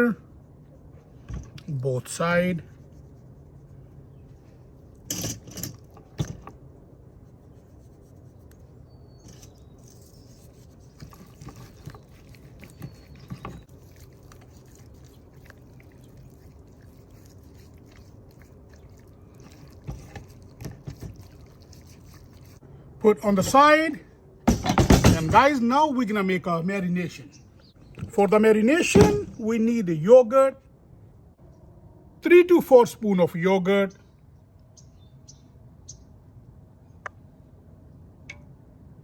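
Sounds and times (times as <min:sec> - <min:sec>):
steady low hum: 0:00.0 - 0:28.2
kitchen knocks and scrapes: 0:24.5 - 0:25.5.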